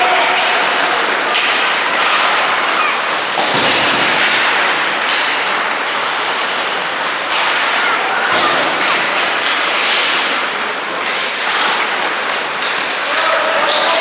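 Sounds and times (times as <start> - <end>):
skates scraping on ice: 0.0 - 14.0
hockey stick or puck knocks: 0.3 - 10.6.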